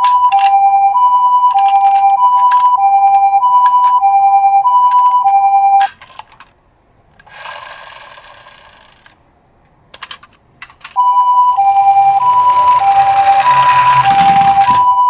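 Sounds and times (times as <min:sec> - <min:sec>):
clicks: 0:00.0 - 0:00.7, 0:01.4 - 0:15.0
toy siren two-tone: 0:00.0 - 0:05.9, 0:11.0 - 0:15.0
soft rattling: 0:05.8 - 0:11.0.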